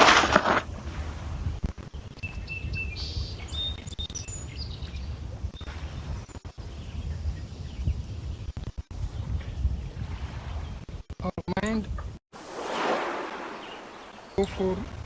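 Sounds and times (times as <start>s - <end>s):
water lapping against stones: 0.0s - 1.9s, 12.4s - 15.0s
small birds chirping: 2.0s - 11.8s, 13.2s - 15.0s.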